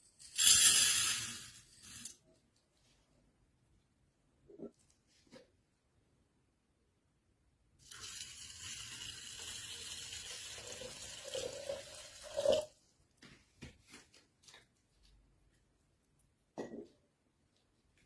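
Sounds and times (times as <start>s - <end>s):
water running: 7.8s - 12.7s.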